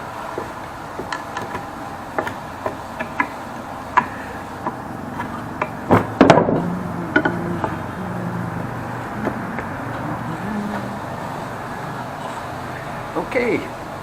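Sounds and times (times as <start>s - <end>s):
low steady hum: 0.0s - 14.0s
hand tools tapping on wood: 0.2s - 7.8s.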